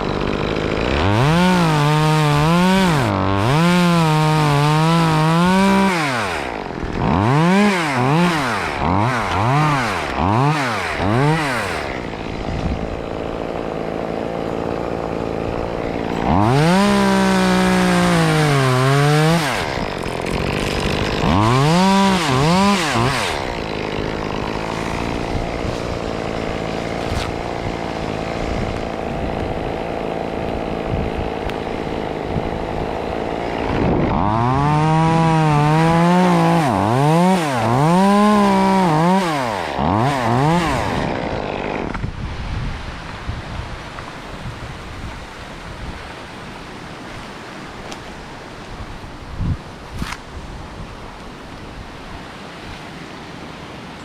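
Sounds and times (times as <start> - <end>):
chainsaw engine revving: 0.0 - 42.2.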